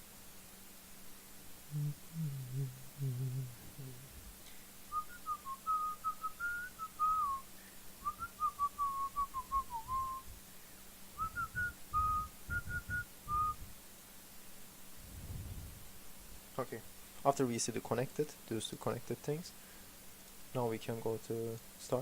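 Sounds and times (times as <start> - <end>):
person whistling a tune: 4.9 - 10.3, 11.2 - 13.6.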